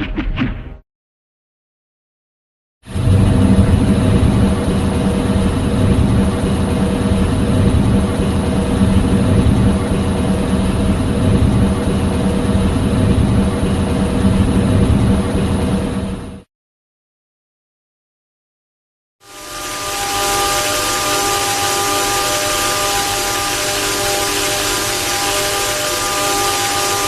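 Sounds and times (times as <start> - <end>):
loud mechanical rumble: 2.9 - 16.5, 19.3 - 27.0.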